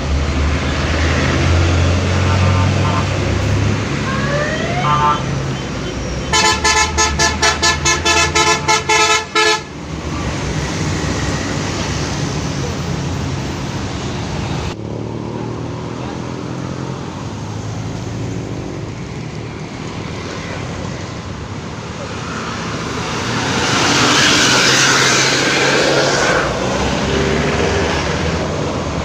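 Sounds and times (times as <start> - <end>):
bus engine: 0.0 - 29.0
traffic noise: 0.0 - 29.0
musical bus horn blasts: 2.3 - 3.2, 4.8 - 5.3, 6.3 - 9.8.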